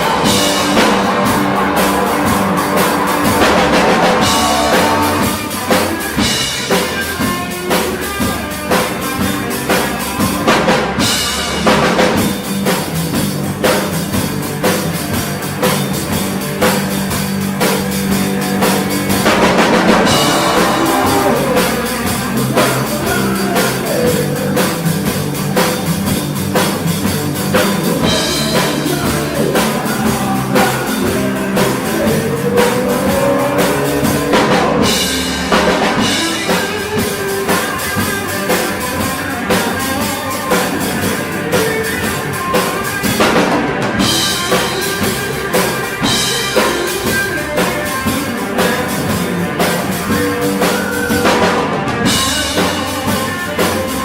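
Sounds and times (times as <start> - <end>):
sustained instrument notes: 0.0 - 6.5, 11.5 - 36.5
rock drum kit playing: 0.0 - 54.0.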